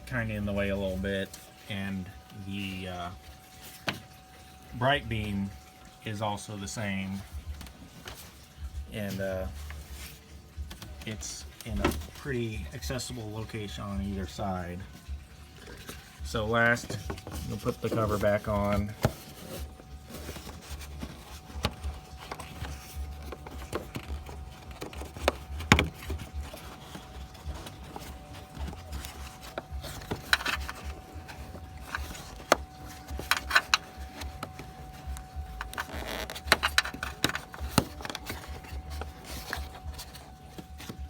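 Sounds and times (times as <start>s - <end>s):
rubber cover rubbing: 15.6s - 41.0s.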